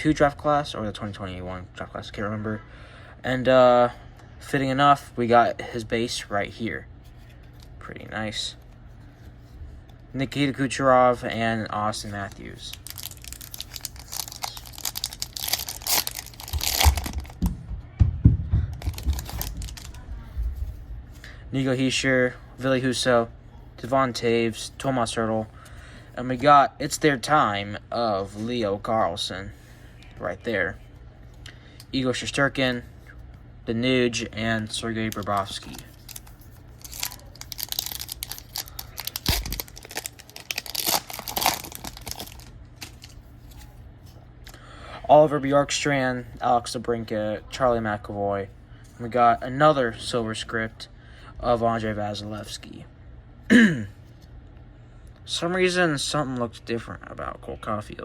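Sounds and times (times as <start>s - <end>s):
foil wrapper tearing and crinkling: 12.3s - 17.4s, 18.8s - 20.0s, 35.1s - 43.6s.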